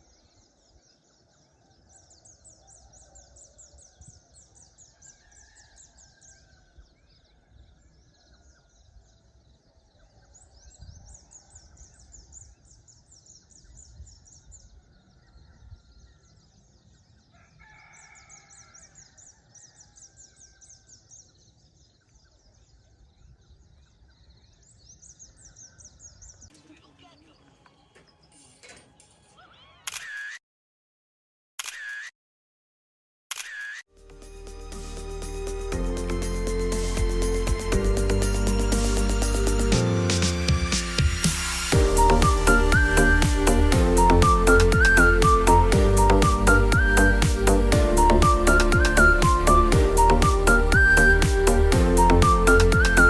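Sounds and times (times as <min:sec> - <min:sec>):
rooster crowing faintly: 0:17.3 - 0:20.3
high fast pulsing: 0:34.0 - 0:53.0.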